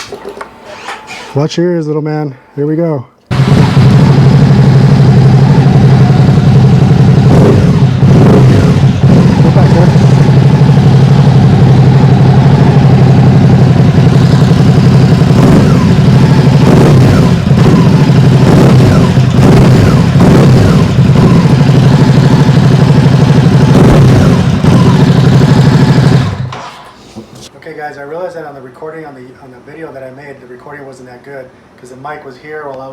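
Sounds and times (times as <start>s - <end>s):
motorcycle engine revving: 3.3s - 26.7s.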